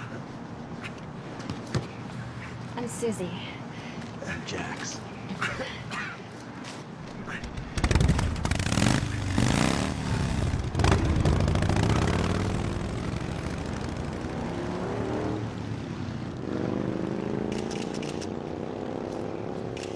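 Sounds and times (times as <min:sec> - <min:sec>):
motorcycle engine accelerating: 0:07.5 - 0:19.9.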